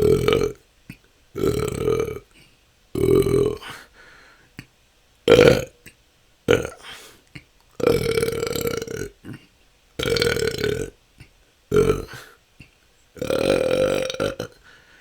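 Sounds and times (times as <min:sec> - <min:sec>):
person belching: 0:00.0 - 0:00.6, 0:01.4 - 0:02.3, 0:03.0 - 0:03.8, 0:05.3 - 0:06.9, 0:07.8 - 0:12.4, 0:13.2 - 0:14.6.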